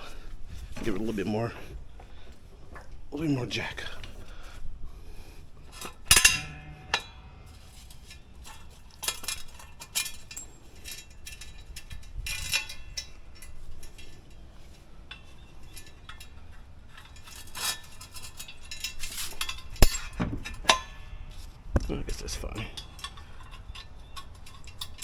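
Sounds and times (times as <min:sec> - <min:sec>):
car jack metallic clinks: 0:05.8 - 0:14.4, 0:15.2 - 0:25.0.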